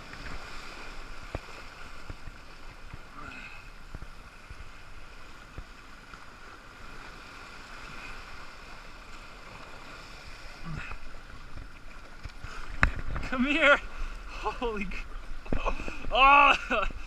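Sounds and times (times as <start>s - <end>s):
surf on shoreline: 0.0s - 17.0s
wind noise on microphone: 11.4s - 17.0s.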